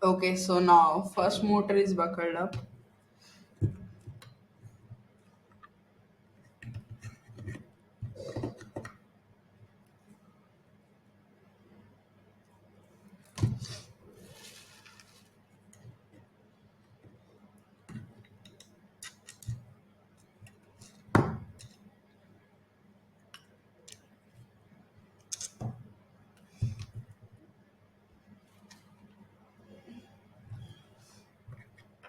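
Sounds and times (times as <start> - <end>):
small hard parts clicking and knocking: 17.9 - 19.6.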